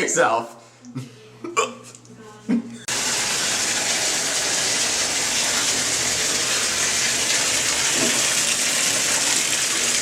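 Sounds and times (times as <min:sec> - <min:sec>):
running water rushing: 0:02.9 - 0:10.0.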